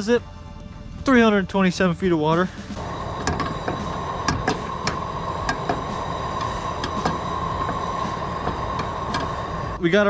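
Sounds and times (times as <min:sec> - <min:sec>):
outboard engine idling: 0:02.5 - 0:09.8
sharp clicks and knocks: 0:02.8 - 0:09.8.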